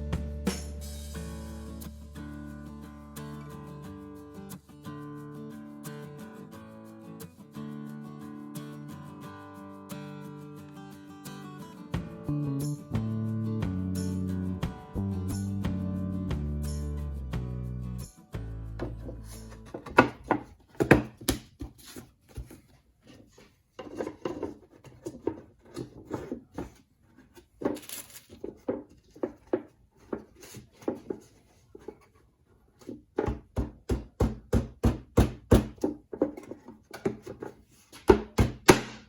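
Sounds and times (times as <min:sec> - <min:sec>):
knocks and taps on wood: 0:33.2 - 0:36.4.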